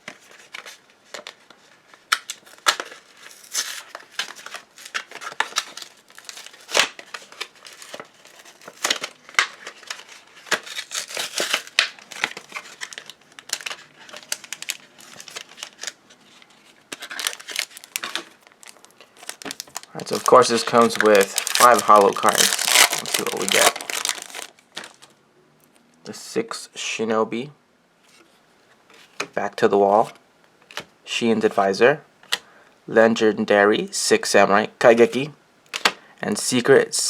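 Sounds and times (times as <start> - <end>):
foil wrapper crinkling: 2.1 - 16.0, 16.8 - 25.1.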